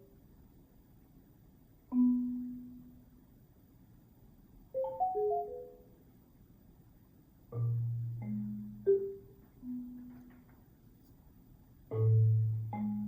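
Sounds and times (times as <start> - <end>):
marimba notes: 1.9 - 3.0, 4.8 - 6.0, 7.5 - 10.4, 11.9 - 13.0.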